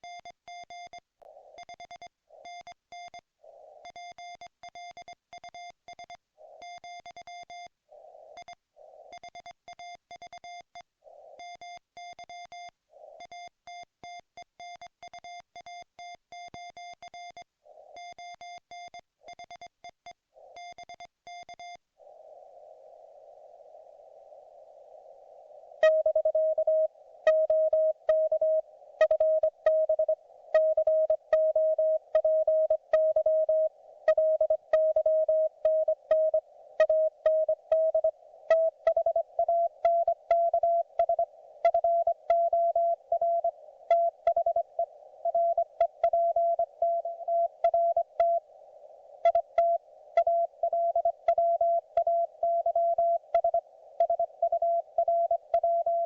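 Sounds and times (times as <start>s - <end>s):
radio receiver hiss: 22.0s - 34.2s.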